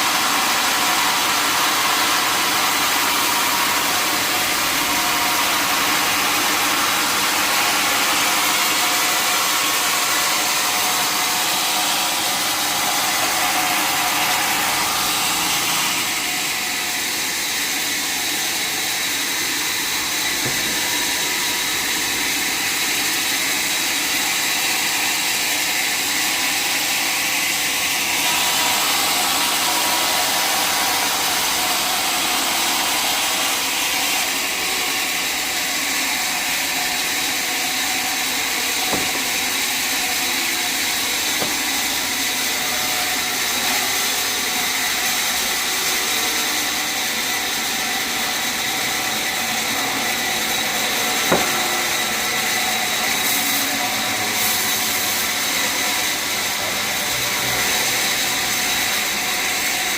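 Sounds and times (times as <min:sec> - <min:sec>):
sawmill machinery running: 0:00.0 - 0:59.9
sharp knocks: 0:20.4 - 0:21.0, 0:38.8 - 0:39.6, 0:41.3 - 0:41.9, 0:51.2 - 0:51.7.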